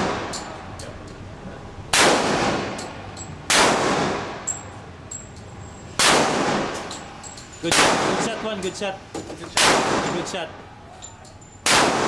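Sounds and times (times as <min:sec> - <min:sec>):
gunshots echoing: 0:01.9 - 0:02.8, 0:03.5 - 0:04.4, 0:06.0 - 0:06.8, 0:07.7 - 0:08.4, 0:09.6 - 0:10.3, 0:11.6 - 0:12.0.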